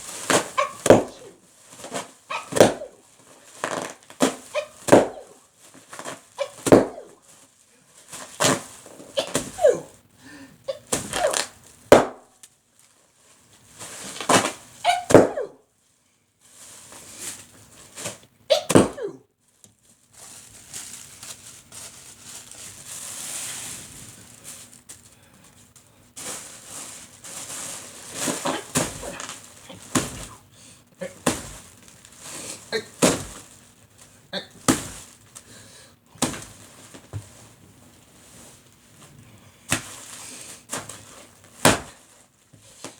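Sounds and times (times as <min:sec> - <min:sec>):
bag popping: 0:00.0 - 0:07.4, 0:08.1 - 0:09.8, 0:10.7 - 0:12.5, 0:13.9 - 0:15.6, 0:18.0 - 0:19.1, 0:26.2 - 0:30.4, 0:31.0 - 0:33.8, 0:34.4 - 0:35.5, 0:36.1 - 0:37.4, 0:39.7 - 0:42.9
bags crinkling and rustling: 0:00.0 - 0:09.9, 0:10.9 - 0:15.3, 0:19.4 - 0:42.9.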